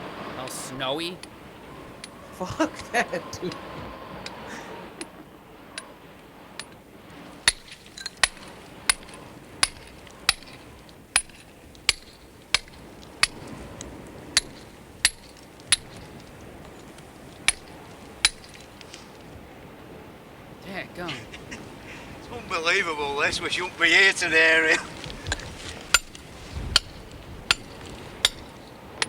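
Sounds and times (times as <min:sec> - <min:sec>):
hammer clinking on brick: 0:07.4 - 0:19.4, 0:23.0 - 0:29.0.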